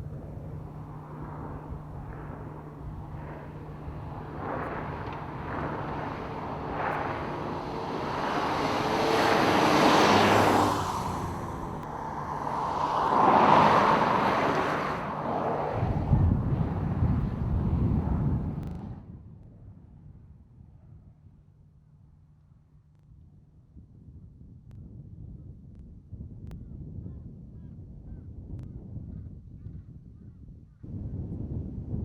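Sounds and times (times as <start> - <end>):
tyre and engine rushing: 0.0 - 18.6
low engine hum: 0.0 - 19.1.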